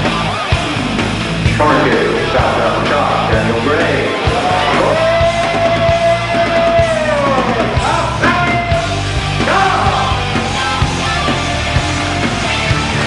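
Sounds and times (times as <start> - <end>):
rock music with guitar and drums: 0.0 - 13.0.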